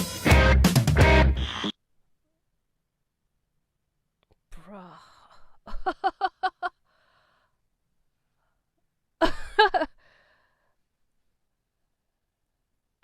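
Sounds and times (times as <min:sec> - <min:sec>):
short sighing vocal sound: 0:04.5 - 0:05.6
person laughing: 0:05.7 - 0:06.8, 0:09.2 - 0:10.0.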